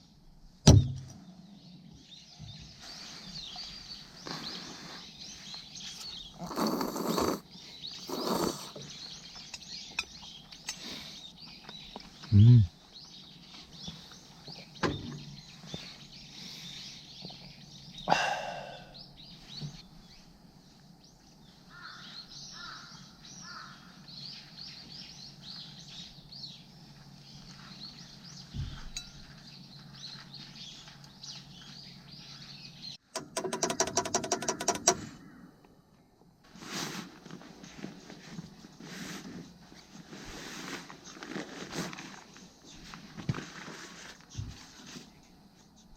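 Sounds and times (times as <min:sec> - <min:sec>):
birds chirping and calling: 0:01.2 - 0:35.4
loud harsh bird call: 0:18.0 - 0:19.1, 0:21.7 - 0:24.0
loud rapid rattling: 0:33.2 - 0:35.1.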